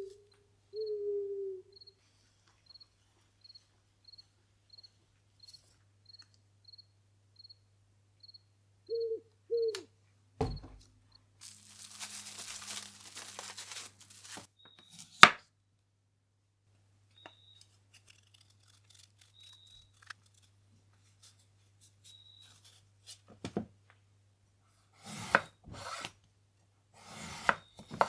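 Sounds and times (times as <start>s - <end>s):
low hoots: 0.0s - 2.0s, 8.8s - 9.9s
cricket chirping: 0.8s - 2.0s, 2.6s - 9.6s
thump: 10.4s - 10.8s
paper rustling and tearing: 11.4s - 15.4s, 17.9s - 23.2s.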